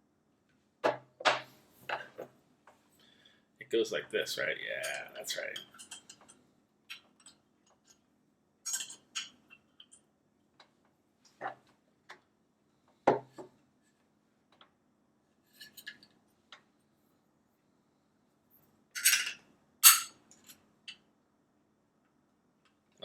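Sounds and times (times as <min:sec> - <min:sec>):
lock parts clicking and knocking: 0:19.0 - 0:21.0.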